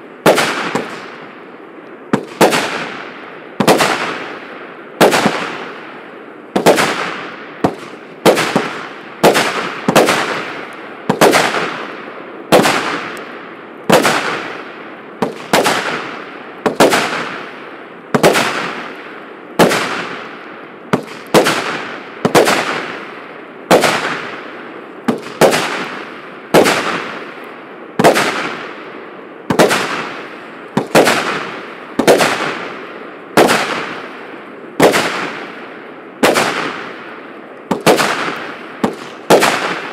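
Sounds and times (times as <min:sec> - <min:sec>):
firework bangs with crackling hiss: 0:00.2 - 0:01.3, 0:02.1 - 0:27.4, 0:28.0 - 0:39.9.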